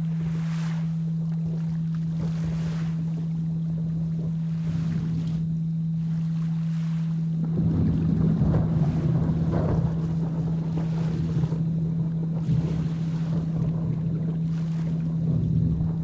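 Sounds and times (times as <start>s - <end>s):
low steady tone: 0.0s - 16.0s
thunder rumbling: 7.4s - 16.0s.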